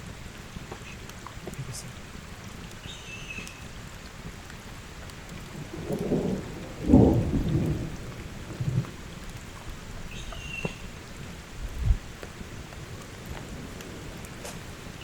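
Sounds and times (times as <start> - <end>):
heavy rain: 0.0 - 15.0
thunder rumble: 5.4 - 15.0.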